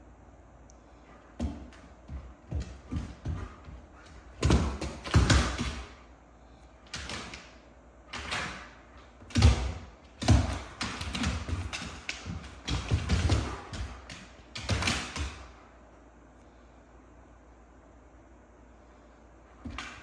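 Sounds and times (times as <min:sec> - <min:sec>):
dog paws thudding: 0:01.2 - 0:06.0, 0:08.1 - 0:15.6.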